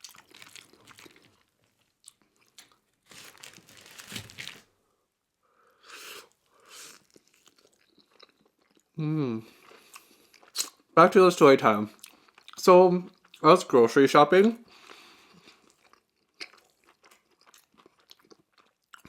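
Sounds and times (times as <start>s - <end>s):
crunchy chewing: 0.0s - 4.6s, 6.2s - 8.9s, 14.8s - 19.0s.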